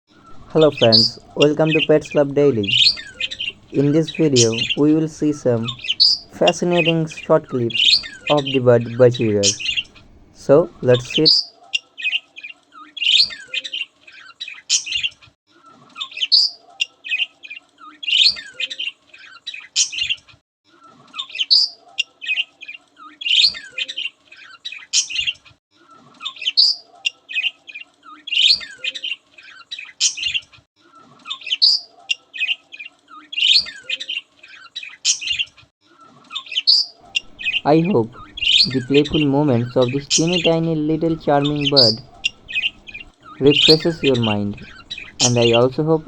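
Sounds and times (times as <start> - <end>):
faint steady hum: 0.2 - 11.2, 37.1 - 46.0
budgerigars chirping and chattering: 0.2 - 12.2, 36.3 - 46.0.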